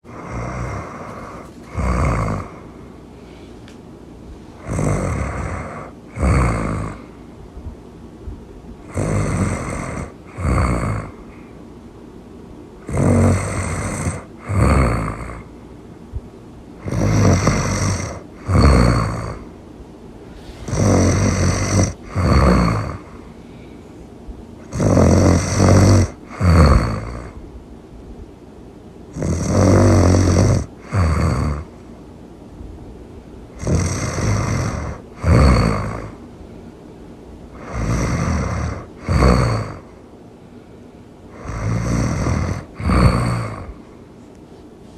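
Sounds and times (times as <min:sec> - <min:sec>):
loud snoring: 0:00.0 - 0:02.8, 0:04.6 - 0:07.2, 0:08.8 - 0:11.4, 0:12.8 - 0:15.5, 0:16.8 - 0:19.5, 0:20.4 - 0:23.3, 0:24.6 - 0:27.4, 0:29.1 - 0:31.8, 0:33.5 - 0:36.2, 0:37.5 - 0:40.0, 0:41.3 - 0:43.8.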